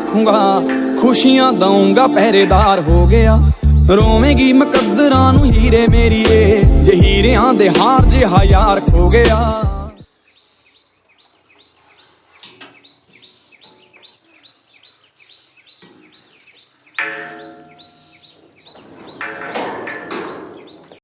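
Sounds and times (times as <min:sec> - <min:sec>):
small birds chirping: 0:06.8 - 0:21.0.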